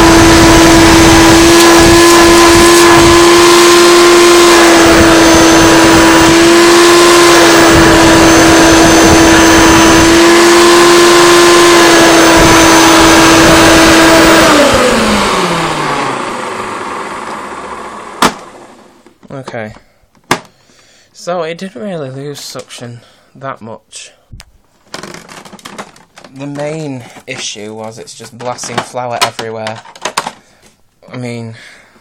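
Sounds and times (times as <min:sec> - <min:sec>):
vacuum cleaner motor whine: 0:00.0 - 0:19.1.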